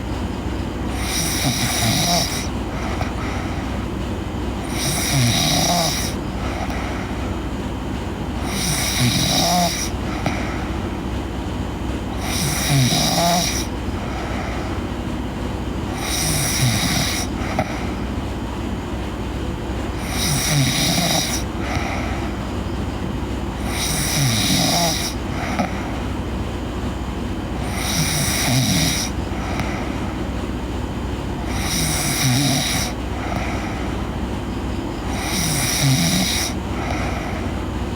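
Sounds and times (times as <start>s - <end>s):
girl snoring: 0.9s - 3.7s, 4.6s - 7.2s, 8.4s - 10.7s, 12.2s - 14.8s, 15.9s - 18.1s, 20.0s - 22.4s, 23.6s - 26.0s, 27.6s - 30.0s, 31.4s - 34.0s, 35.1s - 37.6s.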